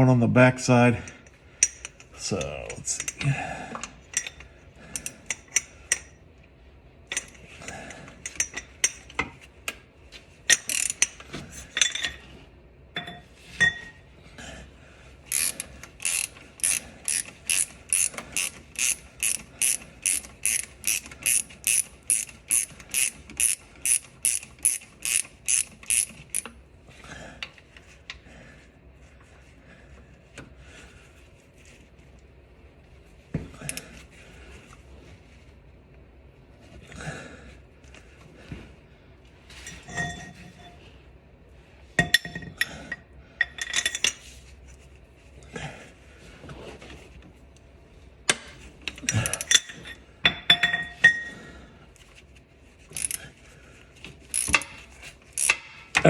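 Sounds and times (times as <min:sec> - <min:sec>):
tools clinking on metal: 0:10.5 - 0:12.2, 0:13.0 - 0:14.0, 0:39.6 - 0:40.8, 0:42.0 - 0:44.2, 0:48.9 - 0:51.4, 0:54.4 - 0:54.8, 0:55.4 - 0:56.0
socket ratchet clicking: 0:15.3 - 0:26.5, 0:53.0 - 0:53.2, 0:54.3 - 0:56.0.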